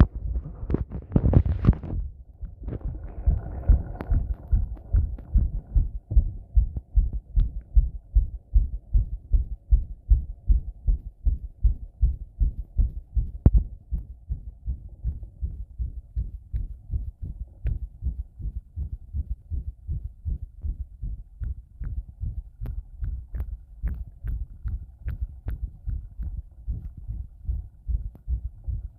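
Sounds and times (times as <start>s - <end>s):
heartbeat thumps: 0.0s - 28.9s
faint rubbing noise: 0.1s - 5.7s.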